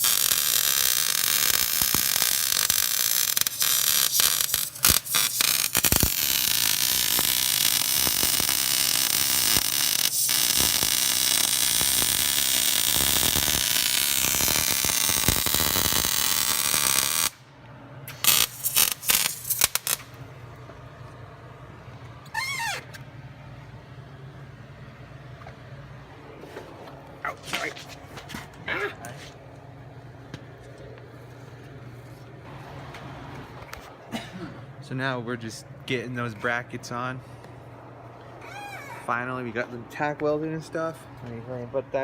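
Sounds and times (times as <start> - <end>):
electric arc welding crackle: 0.0 - 17.4, 18.1 - 20.2.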